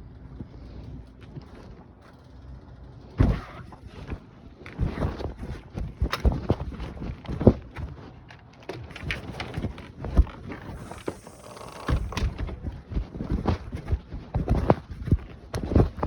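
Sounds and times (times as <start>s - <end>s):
phone rubbing in pocket: 10.1s - 15.1s.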